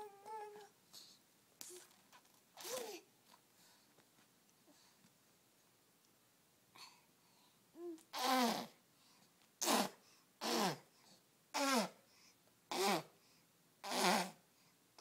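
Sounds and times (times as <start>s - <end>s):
baby making raspy vocal sounds: 7.8s - 8.8s.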